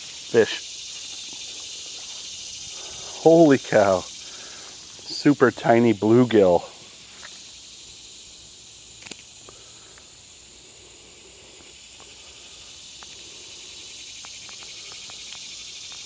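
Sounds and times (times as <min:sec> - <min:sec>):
insects chorus: 0:00.0 - 0:16.0
sharp click: 0:09.0 - 0:09.3
faint ticks: 0:09.0 - 0:10.1, 0:12.9 - 0:13.3, 0:14.2 - 0:16.0.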